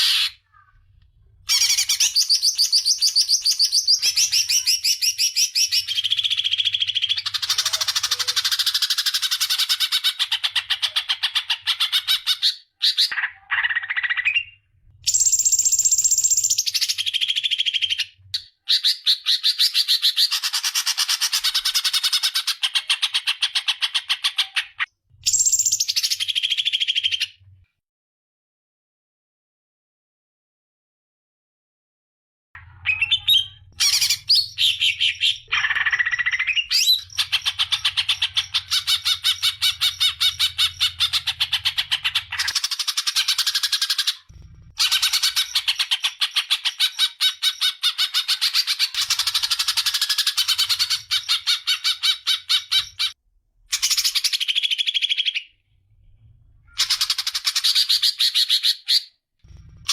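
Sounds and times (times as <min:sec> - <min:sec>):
songbird trilling and chattering: 0:32.7 - 0:44.2.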